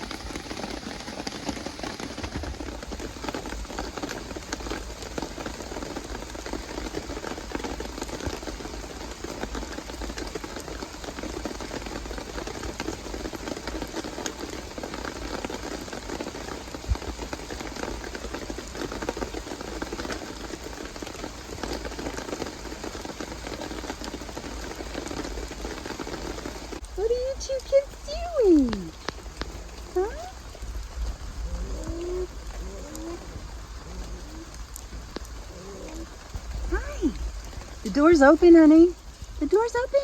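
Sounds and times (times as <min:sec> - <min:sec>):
rain falling: 0:00.0 - 0:40.0.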